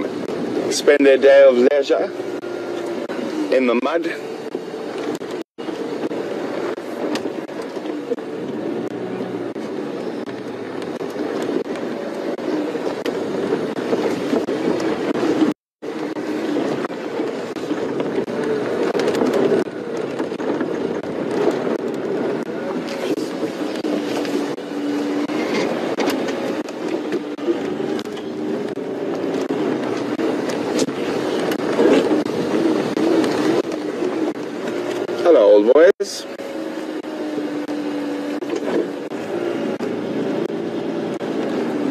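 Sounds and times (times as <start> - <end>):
vehicle engine droning: 0.0 - 41.9.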